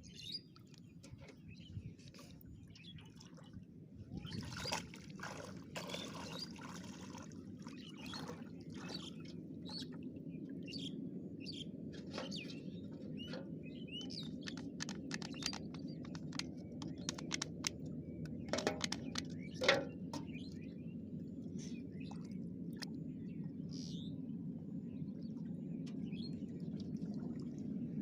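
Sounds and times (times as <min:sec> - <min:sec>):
small birds chirping: 0:10.7 - 0:20.8
sharp ticks: 0:14.4 - 0:17.8.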